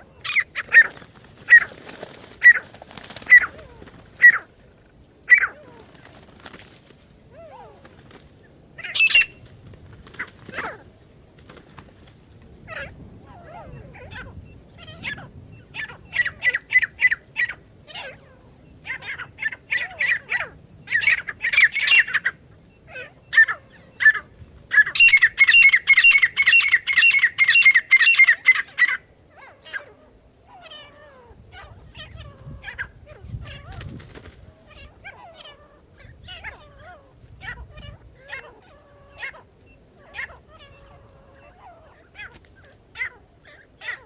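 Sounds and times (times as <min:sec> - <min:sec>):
bird chirping: 0:00.0 - 0:01.7, 0:07.4 - 0:11.2, 0:12.6 - 0:29.0
bird calling sharp repeated notes: 0:08.8 - 0:09.4.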